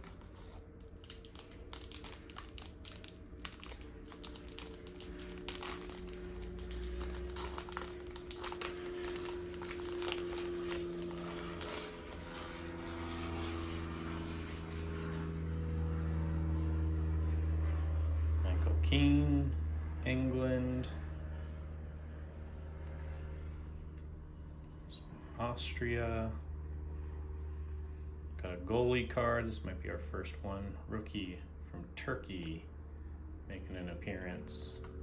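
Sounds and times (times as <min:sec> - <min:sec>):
plastic sleeves crinkling: 0:00.0 - 0:14.8
steady low hum: 0:00.0 - 0:35.0.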